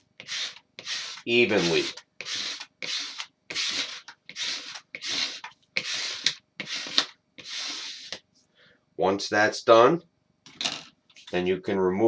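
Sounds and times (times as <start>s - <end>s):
plastic squeegee scraping: 0.2s - 8.2s.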